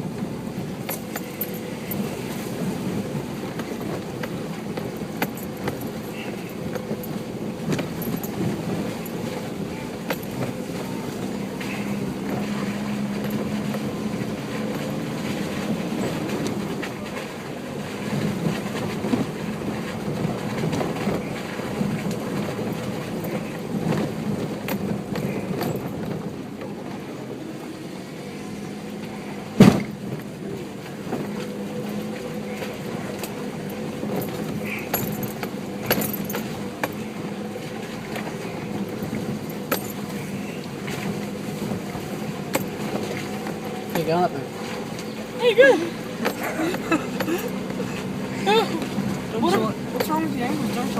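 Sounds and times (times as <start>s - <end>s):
vehicle engine at low revs: 0.0s - 50.9s
small knocks and rattles: 29.6s - 45.2s.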